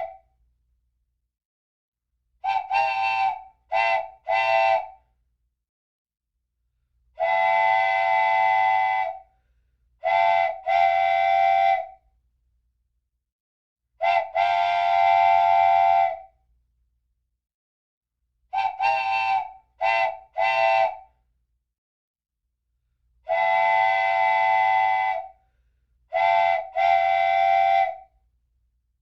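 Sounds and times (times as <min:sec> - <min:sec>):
train whistle blasts: 0:02.4 - 0:05.0, 0:07.2 - 0:09.3, 0:10.0 - 0:12.0, 0:14.0 - 0:16.3, 0:18.5 - 0:21.1, 0:23.3 - 0:25.4, 0:26.1 - 0:28.1.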